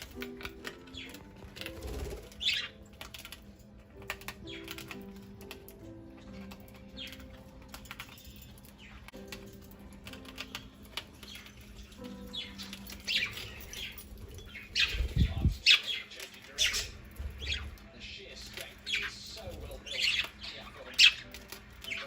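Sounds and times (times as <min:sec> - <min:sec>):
wings flapping: 0:00.0 - 0:03.4
budgerigars chirping and squawking: 0:00.0 - 0:22.0.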